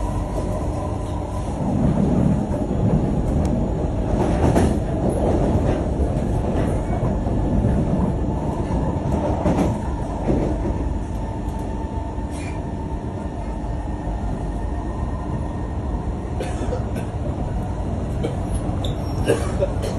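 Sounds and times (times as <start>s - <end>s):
metro train rumble: 0.0s - 19.9s.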